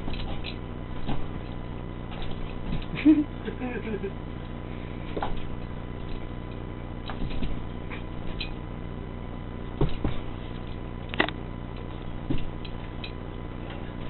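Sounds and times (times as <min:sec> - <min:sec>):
dog moving thumps and scuffs: 0:00.0 - 0:03.0, 0:07.1 - 0:08.5, 0:09.8 - 0:10.6, 0:12.2 - 0:12.9
steady low hum: 0:00.0 - 0:14.0.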